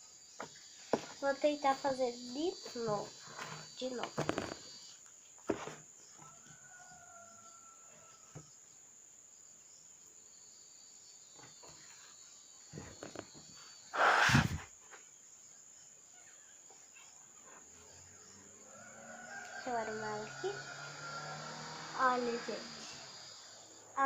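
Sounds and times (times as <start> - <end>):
faint high hiss: 9.6 - 16.4, 17.8 - 24.0
squishy burst: 14.0 - 14.7.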